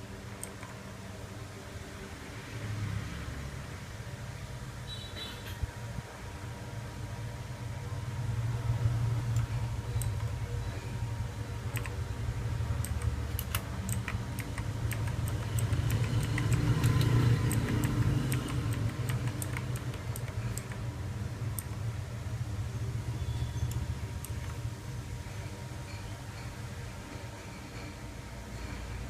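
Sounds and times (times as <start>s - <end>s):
steady low hum: 3.6s - 29.0s
clicky keyboard keys pressed: 11.7s - 12.0s, 12.8s - 20.9s.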